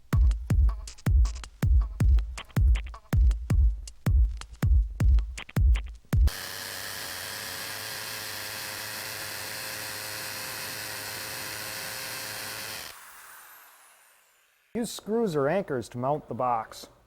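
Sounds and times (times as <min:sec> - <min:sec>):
electronic music with thumping beat: 0:00.0 - 0:06.3
power tool motor whining: 0:06.3 - 0:14.7.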